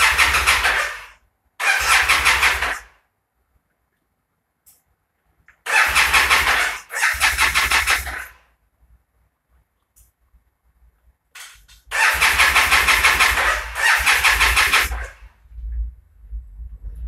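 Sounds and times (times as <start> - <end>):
motorcycle engine cranking: 0.0 - 2.9, 5.7 - 8.3, 11.4 - 15.2.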